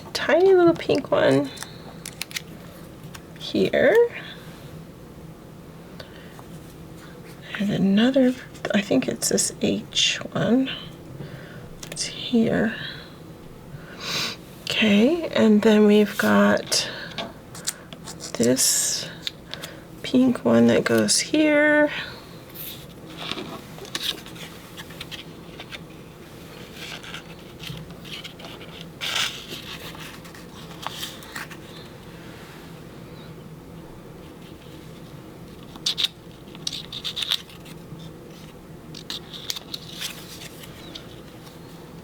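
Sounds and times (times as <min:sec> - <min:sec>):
paper rustling and scraping: 0:00.3 - 0:03.2, 0:22.5 - 0:32.0, 0:34.3 - 0:41.8.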